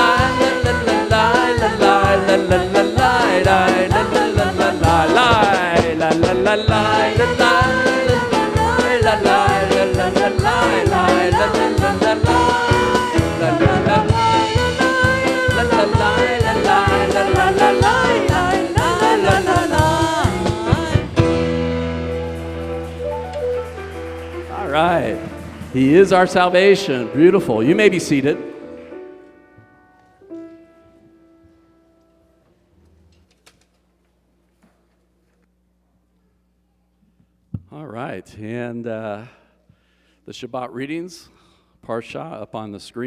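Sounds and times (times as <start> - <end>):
steady drum beat: 0.0 - 28.6
voices singing: 0.0 - 29.6
worship band playing: 0.0 - 32.3.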